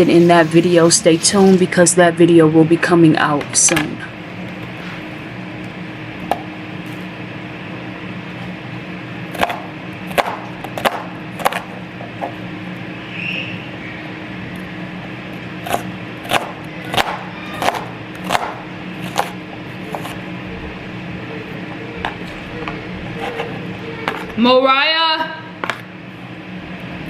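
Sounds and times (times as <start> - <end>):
steady low hum: 0.0 - 27.0
knife chopping on cutting board: 15.7 - 19.3.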